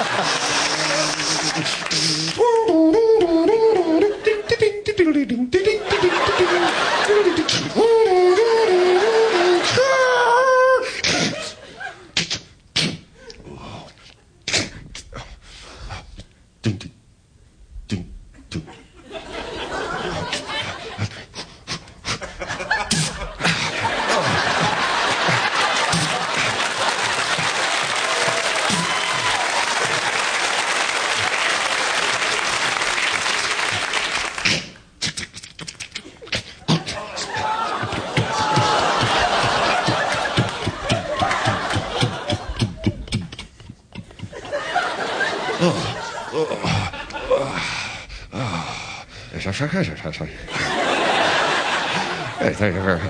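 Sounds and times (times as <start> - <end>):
audience applauding: 0.0 - 2.4, 24.0 - 34.6, 37.4 - 42.5
mouth-made sound effects: 0.1 - 11.5, 15.9 - 17.0, 17.8 - 18.8, 34.3 - 38.8
man imitating a siren: 1.0 - 4.2, 7.3 - 10.8.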